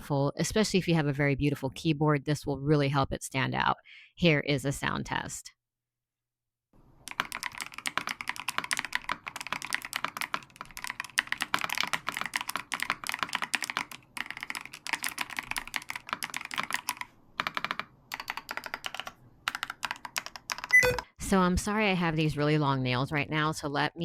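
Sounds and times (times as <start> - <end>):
fast typing on mechanical keyboard: 7.0 - 20.8
fingernails clicking on keycaps: 7.0 - 21.0.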